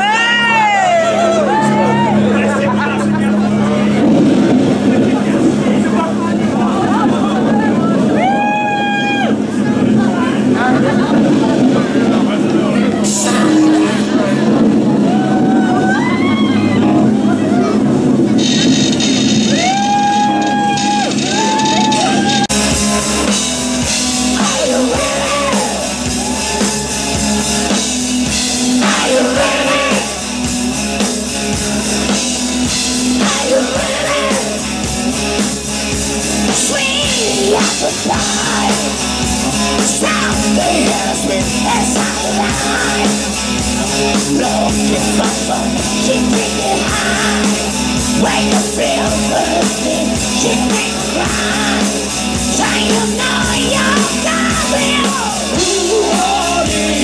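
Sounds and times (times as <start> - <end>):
hard rock song: 9.4 - 17.0, 17.8 - 57.0
person singing: 24.2 - 26.9, 28.8 - 30.3, 33.2 - 34.7, 36.5 - 57.0.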